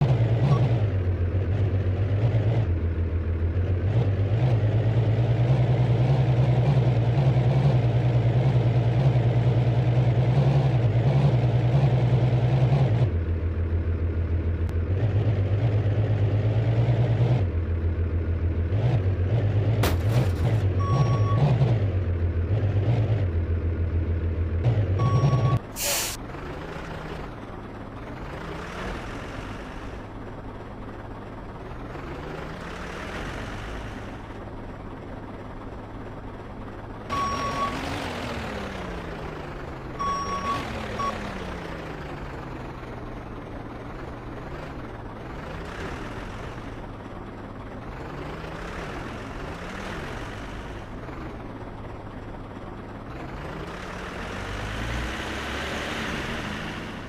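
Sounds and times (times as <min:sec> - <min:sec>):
heavy vehicle engine revving: 0:00.0 - 0:57.0
reversing beeps: 0:20.8 - 0:21.6, 0:25.0 - 0:25.6, 0:37.1 - 0:37.9, 0:40.0 - 0:41.3.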